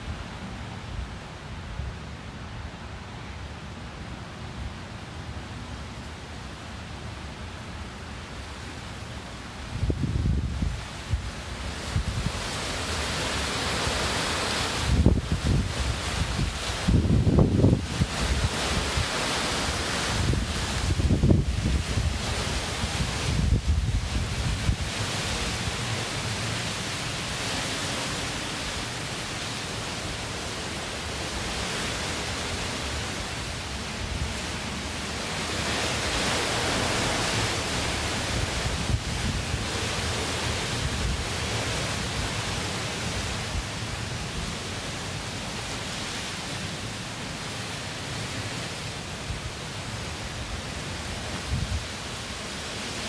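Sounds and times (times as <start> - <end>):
strong wind rushing: 9.7 - 13.1, 13.7 - 19.1, 20.0 - 26.1
wind buffeting microphone: 9.8 - 12.5, 14.8 - 19.1, 20.0 - 26.1.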